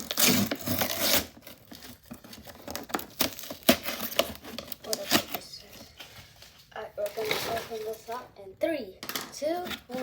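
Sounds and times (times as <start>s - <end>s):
packaging crinkling and tearing: 0.0s - 6.0s.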